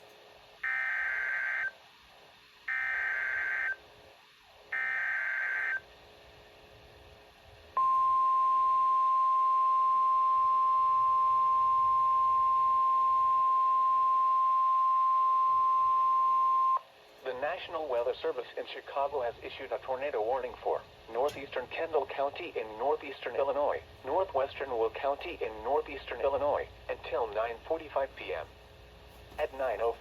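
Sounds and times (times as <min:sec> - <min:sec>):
steady single-pitch attention tone: 0:07.8 - 0:16.8.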